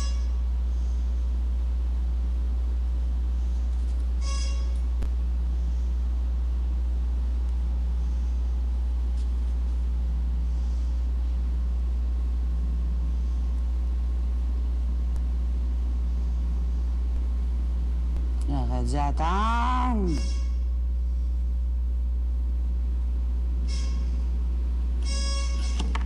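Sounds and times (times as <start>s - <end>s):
electronic alarm tone: 0.0s - 0.4s, 4.2s - 4.8s, 20.1s - 20.6s, 23.6s - 24.3s, 25.0s - 26.0s
low electrical hum: 0.0s - 26.0s.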